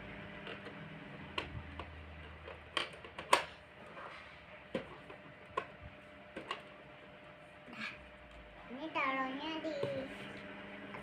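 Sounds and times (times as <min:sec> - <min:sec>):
plastic toy clicks and knocks: 0:01.4 - 0:03.5.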